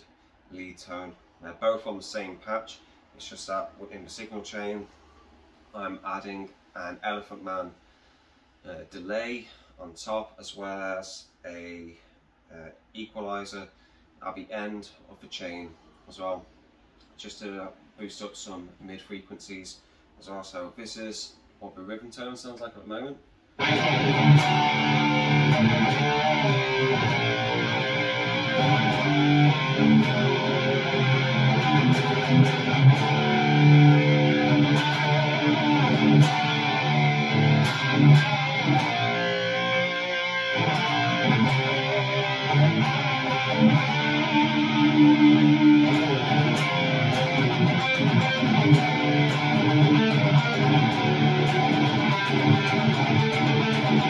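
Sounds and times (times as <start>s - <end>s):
electric guitar strummed chords: 23.6s - 54.0s.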